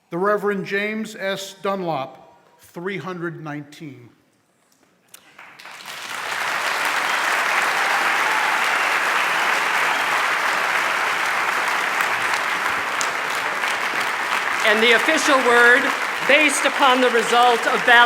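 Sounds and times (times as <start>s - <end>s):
crowd applauding: 5.2s - 18.0s.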